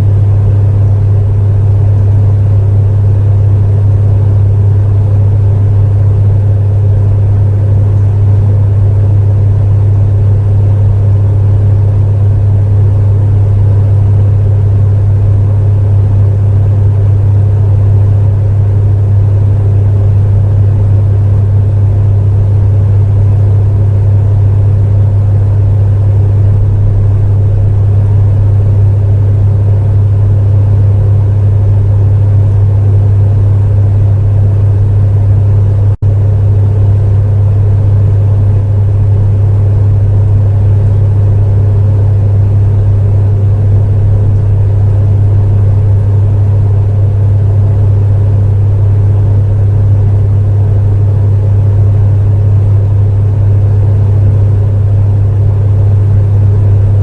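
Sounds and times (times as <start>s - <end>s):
electric heater humming: 0.0s - 57.0s
fan rushing: 0.0s - 57.0s.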